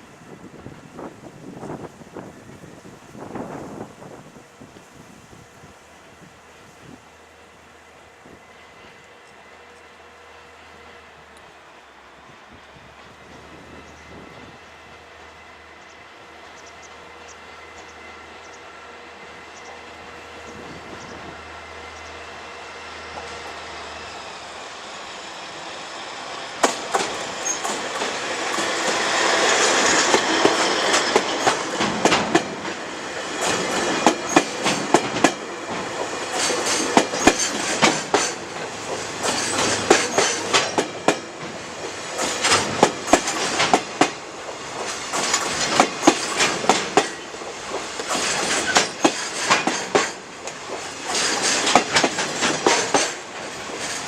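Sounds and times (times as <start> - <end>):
diesel locomotive passing: 0.0 - 54.0
train wheels clacking over rail joints: 25.6 - 54.0.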